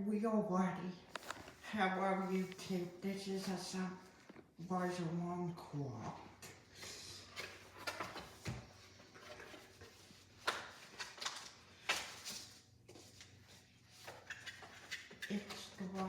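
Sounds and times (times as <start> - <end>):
cardboard packaging rustling: 1.1 - 2.6, 7.3 - 15.2.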